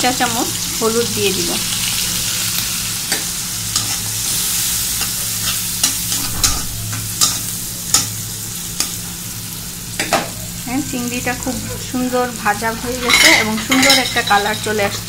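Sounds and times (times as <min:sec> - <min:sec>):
food sizzling in oil: 0:00.0 - 0:15.0.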